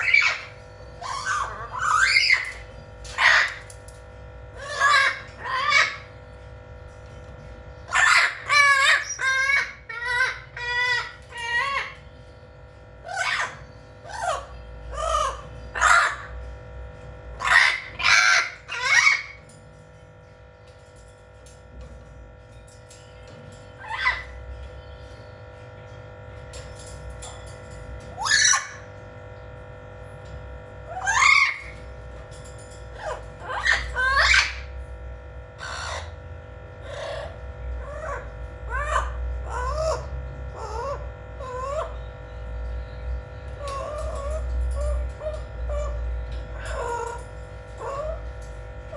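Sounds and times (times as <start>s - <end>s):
parrot squawking: 0.0s - 3.7s, 4.5s - 6.2s, 7.9s - 12.1s, 13.0s - 16.4s, 17.4s - 19.5s, 23.6s - 24.4s, 28.1s - 28.9s, 30.9s - 31.8s, 32.9s - 34.7s, 35.6s - 36.2s, 36.8s - 42.2s, 43.5s - 48.9s.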